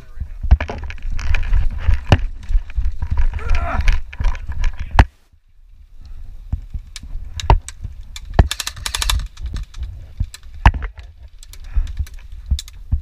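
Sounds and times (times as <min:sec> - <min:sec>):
microphone handling: 0:00.0 - 0:05.2
wind rumble on microphone: 0:00.0 - 0:13.0
airsoft guns firing: 0:08.3 - 0:09.7.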